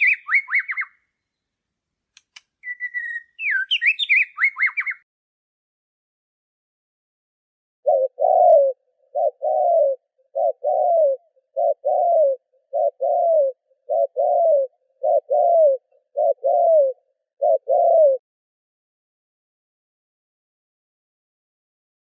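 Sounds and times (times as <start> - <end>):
bird cooing: 0.0 - 1.0, 2.6 - 5.0, 7.8 - 18.2.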